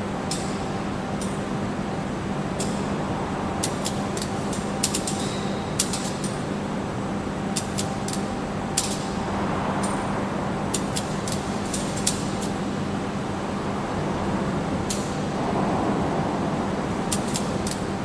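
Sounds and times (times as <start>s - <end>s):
factory machinery humming: 0.0s - 18.0s.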